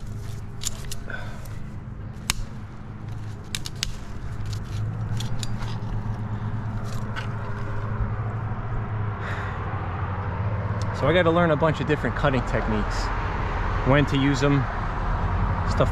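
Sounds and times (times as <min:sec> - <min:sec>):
climbing spurs clicking on bark: 0:00.0 - 0:08.1
steady low hum: 0:00.0 - 0:11.6.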